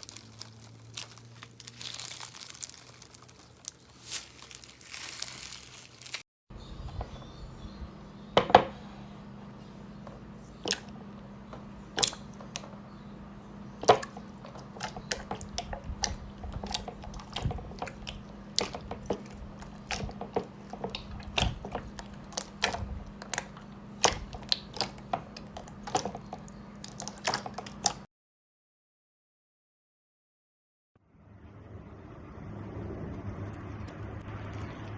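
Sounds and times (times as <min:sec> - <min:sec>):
hands squeezing slime: 0:00.0 - 0:06.2, 0:10.6 - 0:11.0, 0:11.9 - 0:12.7, 0:13.8 - 0:28.0
low steady hum: 0:06.5 - 0:28.1.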